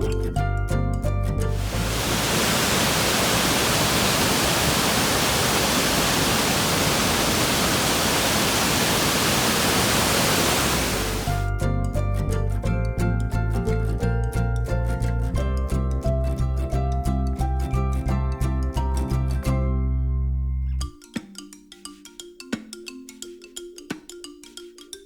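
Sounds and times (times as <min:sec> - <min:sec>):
waterfall roaring: 0:01.6 - 0:11.4.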